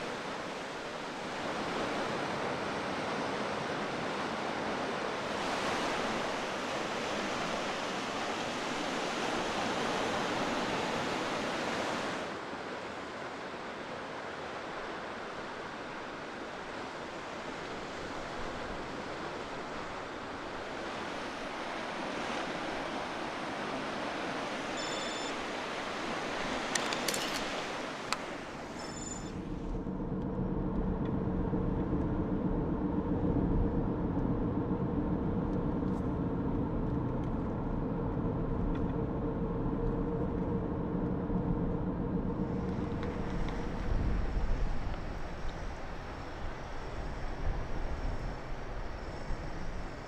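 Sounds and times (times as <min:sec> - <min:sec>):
sea surf washing: 0:00.0 - 0:28.8.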